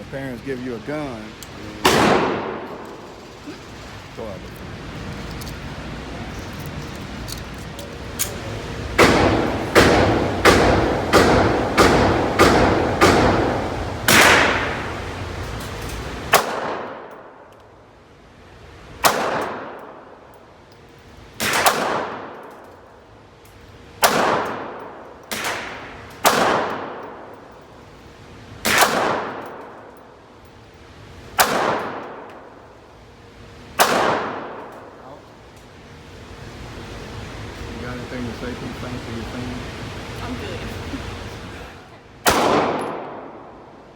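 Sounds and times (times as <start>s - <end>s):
echoing pistol shots: 1.8s - 2.9s, 9.0s - 15.0s, 16.3s - 17.2s, 19.0s - 20.0s, 21.4s - 22.4s, 24.0s - 27.3s, 28.6s - 29.7s, 31.4s - 32.5s, 33.8s - 34.7s, 42.2s - 43.6s.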